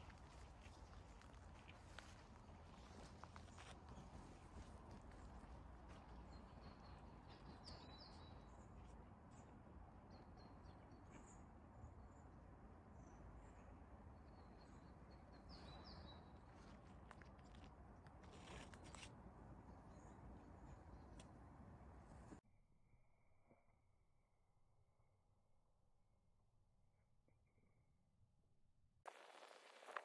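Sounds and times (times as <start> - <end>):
faint bird song: 0.0 - 17.6, 19.6 - 22.4.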